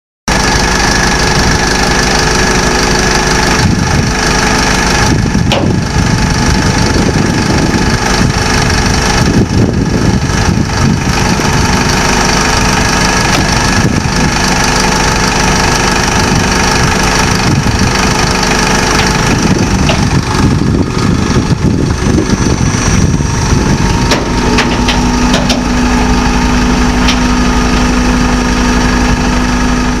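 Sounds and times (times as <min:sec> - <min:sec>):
diesel truck engine running: 0:00.3 - 0:30.0
steady low tone: 0:15.6 - 0:30.0.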